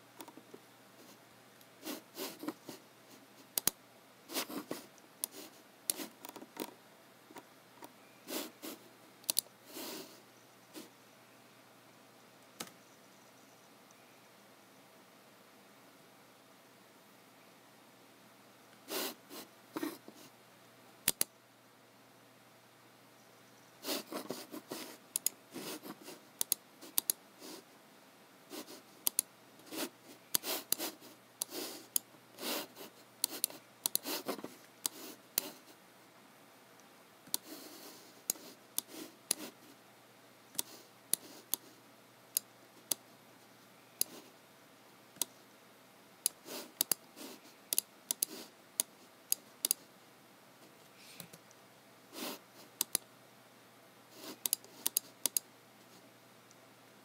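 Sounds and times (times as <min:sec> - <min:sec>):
mouse and keyboard clicks: 0:03.5 - 0:03.8, 0:04.4 - 0:08.0, 0:09.2 - 0:09.5, 0:12.6 - 0:12.8, 0:21.1 - 0:21.3, 0:24.0 - 0:27.2, 0:29.0 - 0:32.1, 0:33.2 - 0:35.6, 0:37.3 - 0:37.6, 0:40.5 - 0:43.0, 0:46.2 - 0:47.1, 0:47.7 - 0:49.8, 0:52.8 - 0:53.1, 0:54.2 - 0:55.5.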